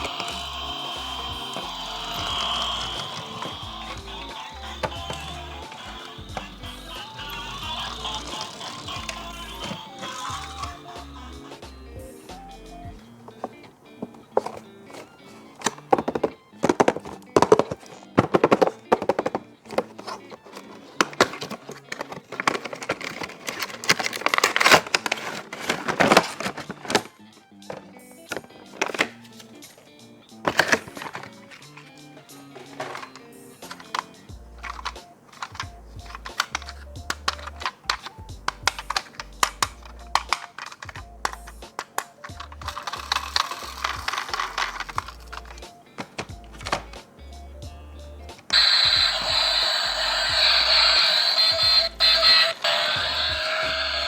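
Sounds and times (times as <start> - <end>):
background music with bass: 0.0 - 3.0, 3.6 - 13.2, 34.2 - 35.0, 35.6 - 40.4, 41.0 - 41.7, 42.3 - 48.4
packaging rustling: 0.0 - 10.9, 13.0 - 47.2
plastic toys clicking and knocking: 0.0 - 11.7, 13.2 - 29.8, 30.4 - 47.2, 48.3 - 54.0
quiet background music: 0.0 - 54.0.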